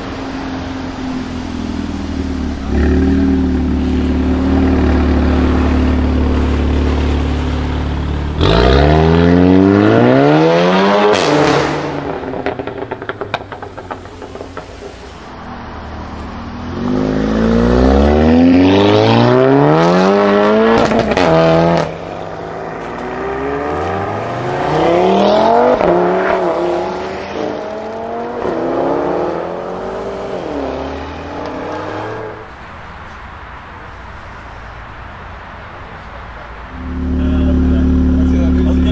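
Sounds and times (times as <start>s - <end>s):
car engine accelerating and revving: 0.0s - 13.2s, 15.5s - 32.5s, 36.7s - 38.9s
exhaust cracks: 11.2s - 15.4s.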